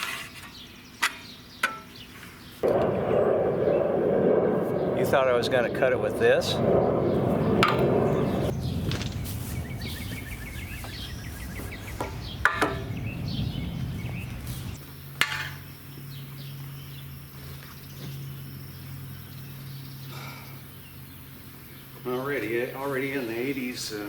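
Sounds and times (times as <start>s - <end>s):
rumbling outdoor background noise: 0.0s - 24.0s
birds chirping: 0.4s - 24.0s
steady low hum: 2.6s - 15.2s.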